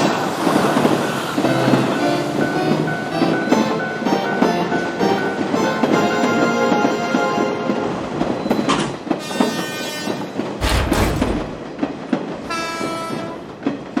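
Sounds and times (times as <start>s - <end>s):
train horn blasts: 1.3s - 10.5s, 12.4s - 13.6s
train wheels clicking over rail joints: 8.5s - 14.0s.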